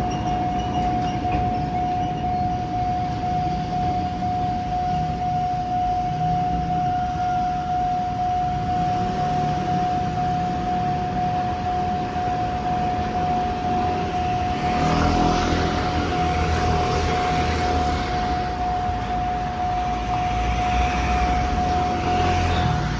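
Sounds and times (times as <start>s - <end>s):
level crossing warning tone: 0.1s - 22.9s
diesel locomotive rumble: 11.1s - 22.9s.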